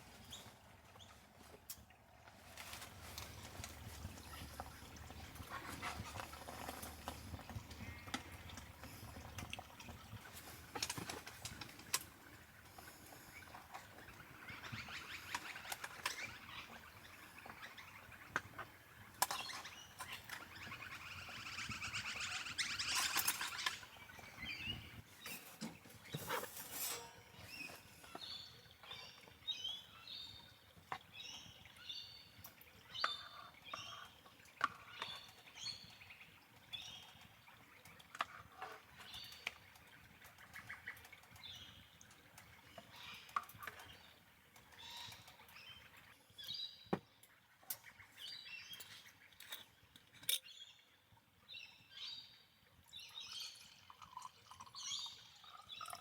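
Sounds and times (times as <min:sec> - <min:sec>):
birds chirping: 0:02.9 - 0:38.1.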